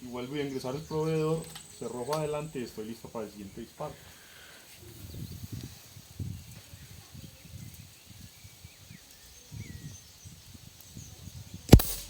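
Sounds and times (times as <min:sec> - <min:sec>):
faint bird chirps: 0:06.6 - 0:11.6.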